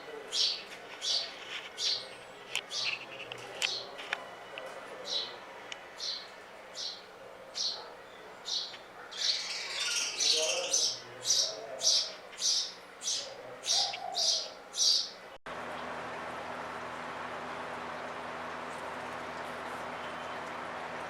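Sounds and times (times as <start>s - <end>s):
small birds chirping: 0.0s - 4.0s, 4.7s - 15.3s.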